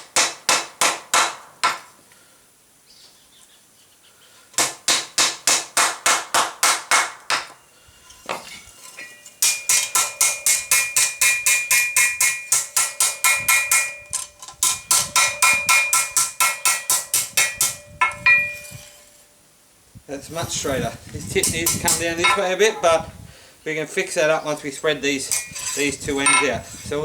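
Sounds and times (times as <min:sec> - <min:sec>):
hammer striking steel on anvil: 0:08.3 - 0:19.2, 0:21.4 - 0:22.8, 0:25.2 - 0:26.6.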